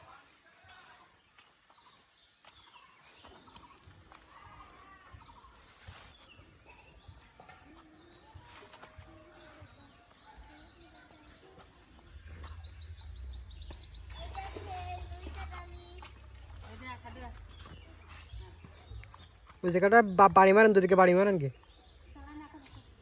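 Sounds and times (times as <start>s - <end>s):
birds chirping: 0.0s - 23.0s
distant voices: 6.9s - 20.9s.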